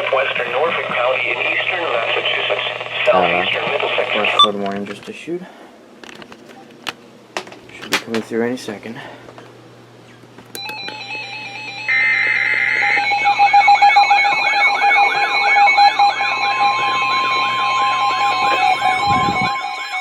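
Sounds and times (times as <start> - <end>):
warbling siren alarm: 10.6 - 20.0
data tones burst: 11.8 - 19.5.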